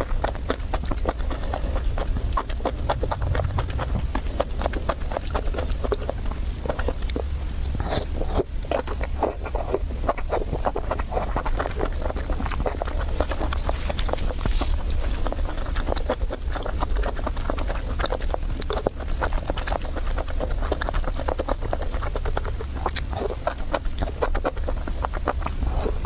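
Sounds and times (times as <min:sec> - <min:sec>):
steady low hum: 0:00.0 - 0:26.0
wet chewing and mouth clicks: 0:00.0 - 0:26.0.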